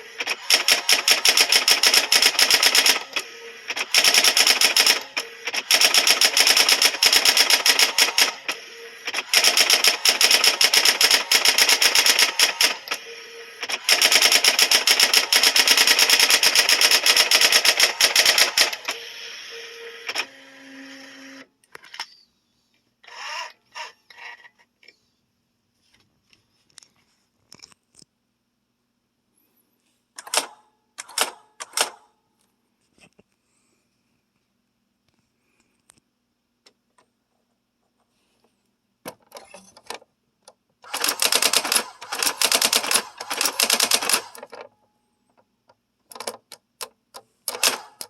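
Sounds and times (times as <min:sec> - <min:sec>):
electric typewriter typing: 0:00.0 - 0:13.0, 0:13.6 - 0:19.0, 0:20.1 - 0:20.3, 0:40.8 - 0:44.7, 0:47.5 - 0:48.0
typewriter motor hum: 0:00.0 - 0:21.5, 0:40.8 - 0:44.6, 0:47.5 - 0:48.0.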